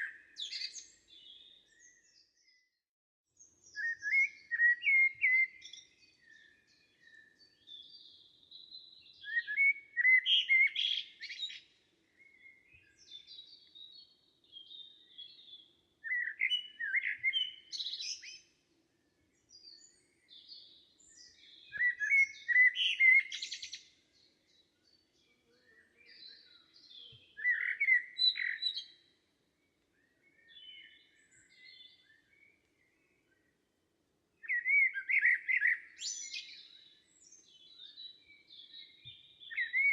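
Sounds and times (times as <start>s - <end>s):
bird song phrase with buzzy flourish: 0.0s - 2.8s, 19.4s - 29.1s, 29.9s - 33.6s
faint bird chirps: 0.0s - 2.8s, 3.4s - 33.7s, 34.4s - 39.9s.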